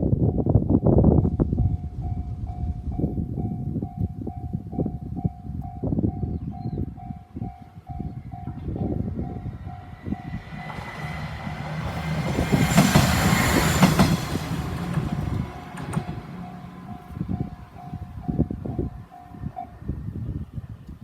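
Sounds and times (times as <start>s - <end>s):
train passing: 0.6s - 6.2s, 6.9s - 20.6s
wheels clacking over rail joints: 9.7s - 17.2s.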